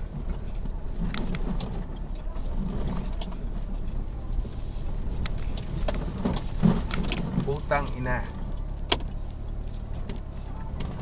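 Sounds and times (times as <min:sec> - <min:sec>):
car engine at low speed: 0:00.0 - 0:11.0
knocks and rattles: 0:05.2 - 0:11.0.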